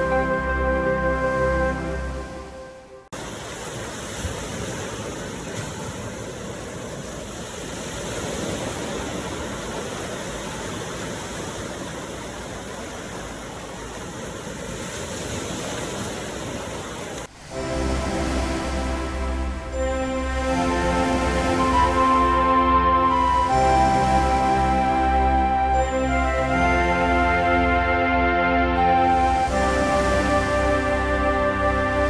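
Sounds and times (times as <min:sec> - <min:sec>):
soft background music: 0:00.0 - 0:03.1, 0:17.3 - 0:32.0
ocean surf rushing: 0:00.0 - 0:32.0.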